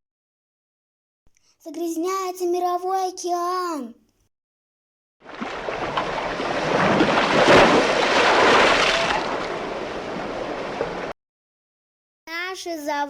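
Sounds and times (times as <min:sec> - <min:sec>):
sea waves washing in: 0:05.2 - 0:11.2.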